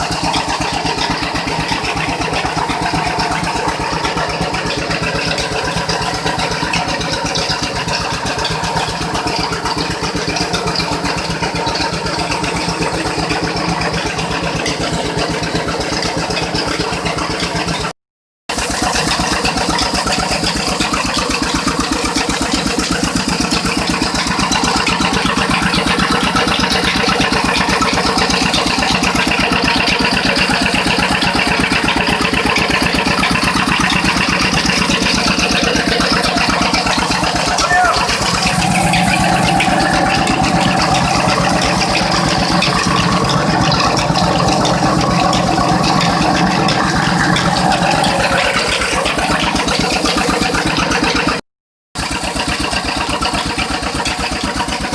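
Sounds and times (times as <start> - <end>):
rice mill droning: 0.0 - 17.9, 18.5 - 51.4, 52.0 - 54.9.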